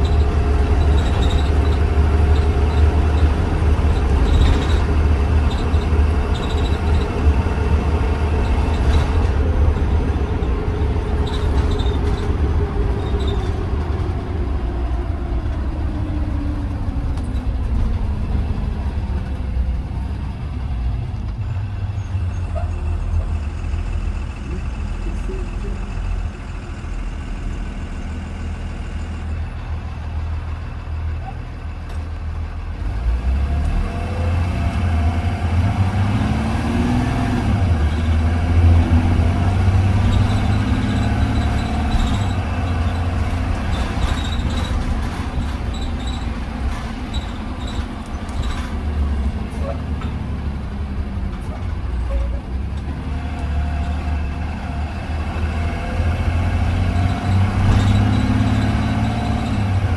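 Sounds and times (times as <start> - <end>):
bus engine: 0.0 - 59.9
road rumble: 0.0 - 59.9.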